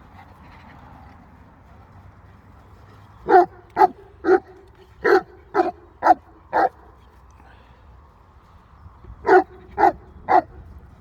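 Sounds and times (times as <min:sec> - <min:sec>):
dog barking: 0:03.3 - 0:06.8, 0:09.2 - 0:10.5.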